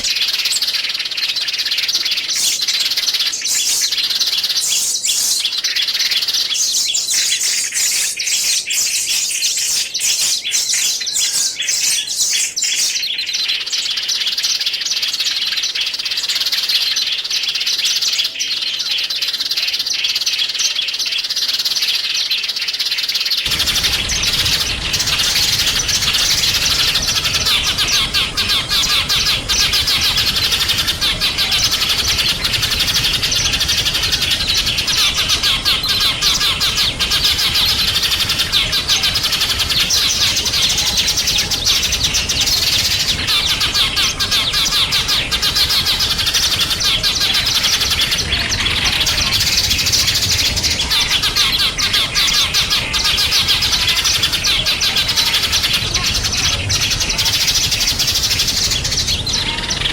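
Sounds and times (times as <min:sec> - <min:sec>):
songbirds chirping and twittering: 0:00.0 - 0:59.9
steady background hiss: 0:23.5 - 0:59.9.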